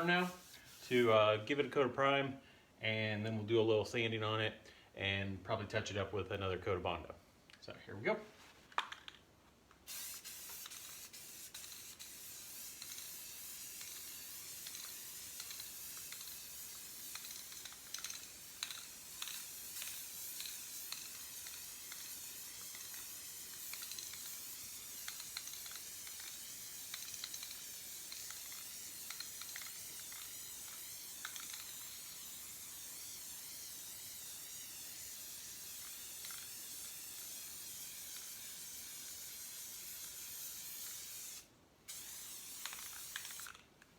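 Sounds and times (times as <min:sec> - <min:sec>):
spray can hissing: 0:00.0 - 0:01.1, 0:09.8 - 0:43.7.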